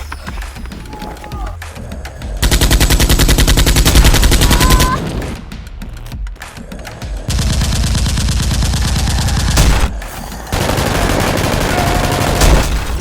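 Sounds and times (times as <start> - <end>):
automatic gunfire: 2.4 - 5.0, 10.5 - 13.0.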